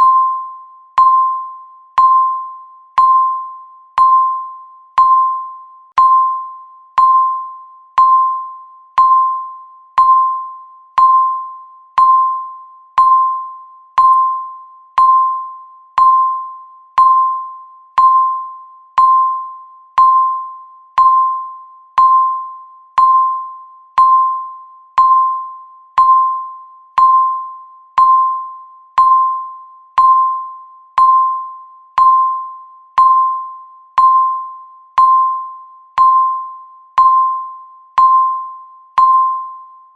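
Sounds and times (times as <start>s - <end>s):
countdown timer beeps: 0.0s - 39.9s.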